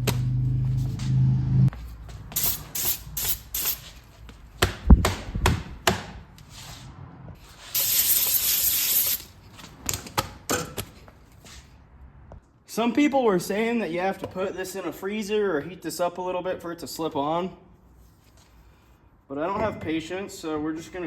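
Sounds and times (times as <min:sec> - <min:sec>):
low hum: 0:00.0 - 0:01.8
aerosol spray hiss: 0:02.4 - 0:03.9, 0:07.7 - 0:09.3.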